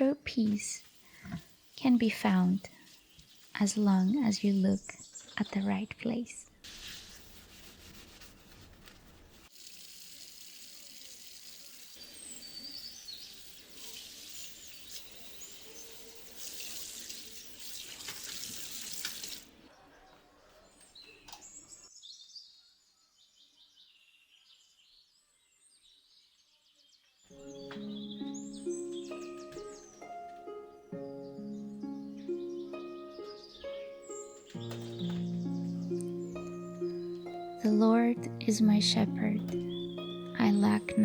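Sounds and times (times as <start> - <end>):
small birds chirping: 0.0 - 7.8, 10.8 - 41.0
running water splashing: 9.5 - 19.6.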